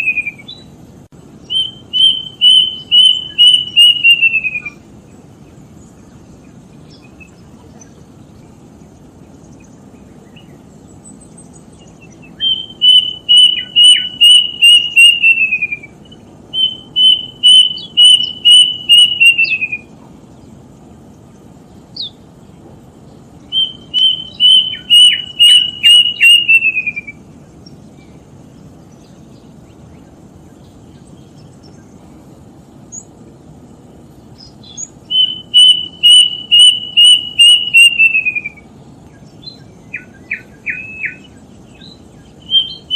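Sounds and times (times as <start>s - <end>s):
bird whistling call: 0.0s - 0.7s, 1.4s - 4.8s, 11.2s - 20.0s, 22.0s - 22.2s, 23.4s - 27.3s, 34.4s - 42.9s.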